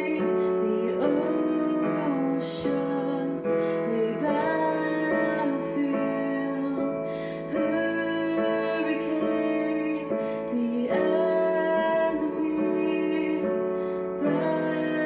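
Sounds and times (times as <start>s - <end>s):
slow gentle instrumental music: 0.0s - 15.0s.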